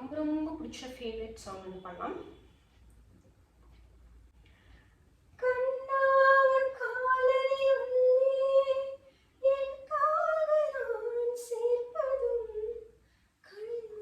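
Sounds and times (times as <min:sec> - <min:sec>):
woman singing unaccompanied: 0:00.0 - 0:00.8, 0:05.4 - 0:12.9, 0:13.5 - 0:14.0.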